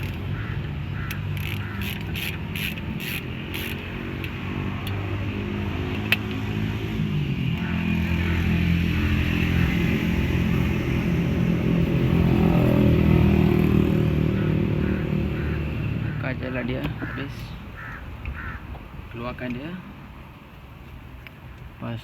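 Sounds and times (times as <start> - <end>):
ratchet clicking: 0.0 - 0.3, 1.0 - 5.1
low engine hum: 0.0 - 21.8.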